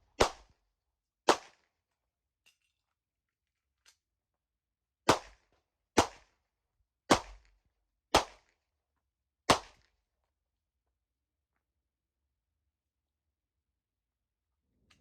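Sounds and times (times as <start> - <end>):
pistol shots: 0.2 - 0.5, 1.3 - 1.6, 5.1 - 5.4, 6.0 - 6.3, 7.1 - 7.5, 8.1 - 8.5, 9.5 - 9.8.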